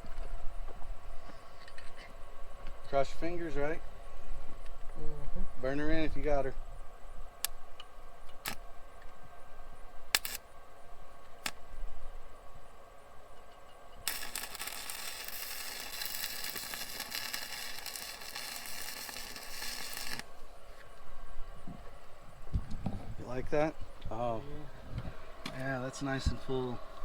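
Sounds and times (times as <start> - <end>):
welding rod striking clicks: 7.4 - 8.6, 10.1 - 10.4, 11.2 - 11.6, 13.4 - 20.3
welding arc crackling hiss: 9.7 - 12.3, 13.9 - 24.4, 25.0 - 27.0.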